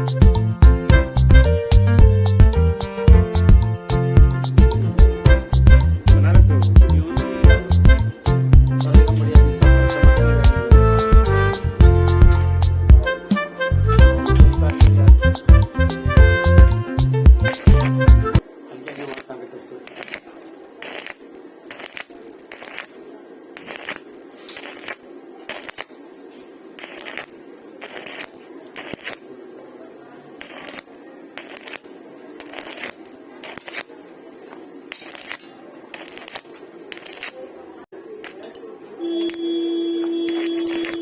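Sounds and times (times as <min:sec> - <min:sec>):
loud steady tone: 0:04.6 - 0:19.3, 0:38.9 - 0:41.0.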